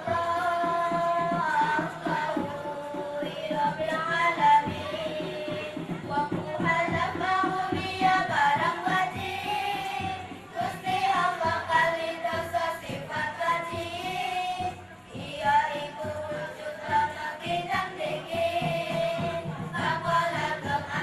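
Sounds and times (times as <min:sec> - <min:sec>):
backing track with steady beat: 0:00.0 - 0:21.0
group of voices singing: 0:00.0 - 0:21.0.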